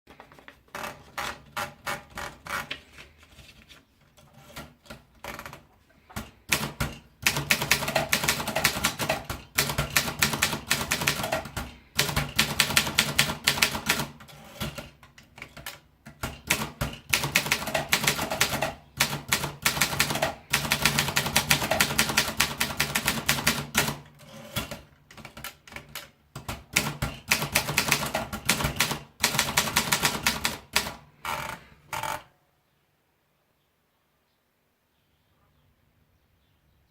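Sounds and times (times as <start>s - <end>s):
typewriter keystrokes: 6.2s - 31.6s.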